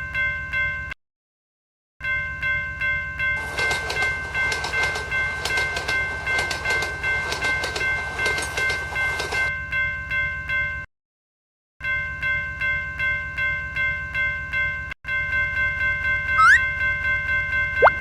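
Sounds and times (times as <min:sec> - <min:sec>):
level crossing bell ringing: 0:03.4 - 0:09.5, 0:16.4 - 0:17.0
train wheels clattering: 0:03.4 - 0:09.5.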